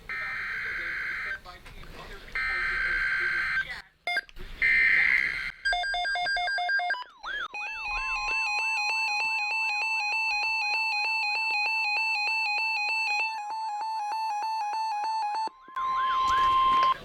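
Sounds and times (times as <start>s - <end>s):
digital data tones: 2.4s - 17.0s
warbling alarm: 4.6s - 17.0s.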